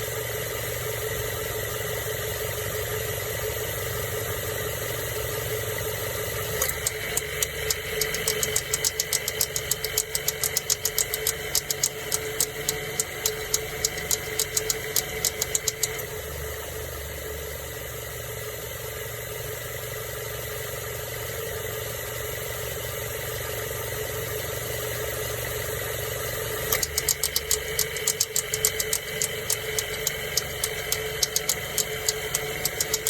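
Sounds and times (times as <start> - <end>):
ac compressor rapid clicking: 6.5 - 16.2, 26.7 - 33.0.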